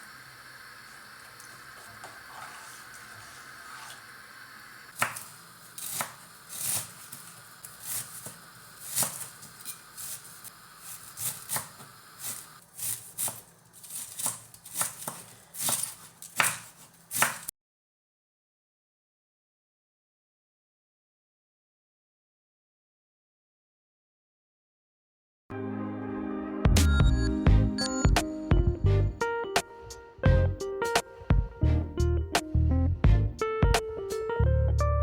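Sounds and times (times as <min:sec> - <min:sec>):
knife chopping on cutting board: 0:05.0 - 0:07.2, 0:07.8 - 0:10.3, 0:11.1 - 0:17.5.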